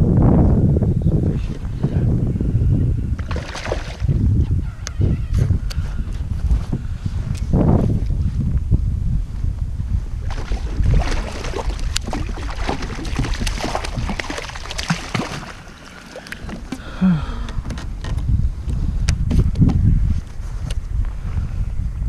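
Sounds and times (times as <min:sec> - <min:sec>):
wind rumbling on microphone: 0:00.0 - 0:22.0
water splashing: 0:03.2 - 0:04.1, 0:10.2 - 0:17.0.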